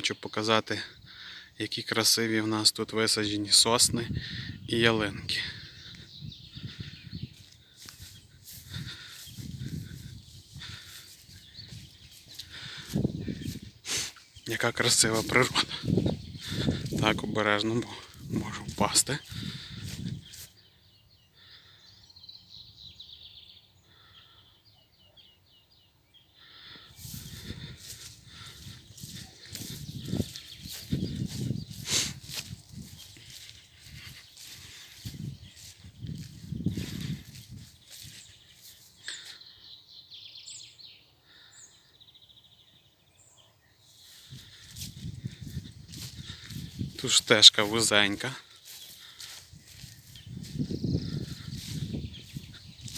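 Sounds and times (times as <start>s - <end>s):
songbirds chirping: 0.0s - 52.9s
footsteps on a path: 5.5s - 20.6s, 26.5s - 39.4s, 43.9s - 52.9s.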